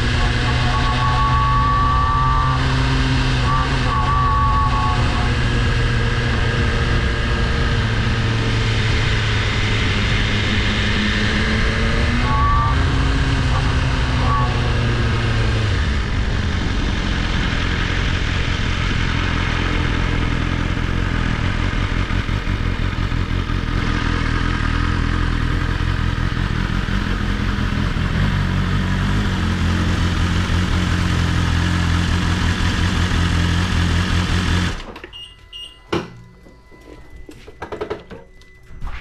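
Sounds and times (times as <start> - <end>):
buzzing noise: 0.0 - 21.0
motorcycle engine running: 0.0 - 34.9.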